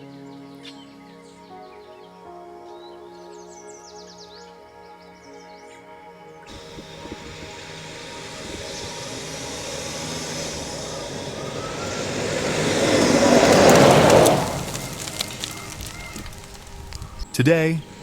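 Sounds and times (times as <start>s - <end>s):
rushing noise passing by: 6.5s - 18.0s.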